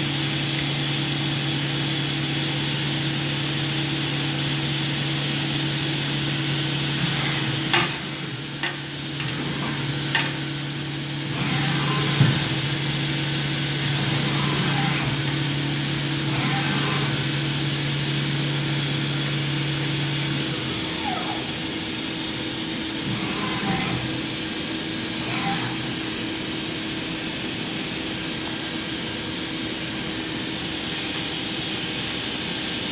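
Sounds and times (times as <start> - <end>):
machining centre humming: 5.3 - 28.7.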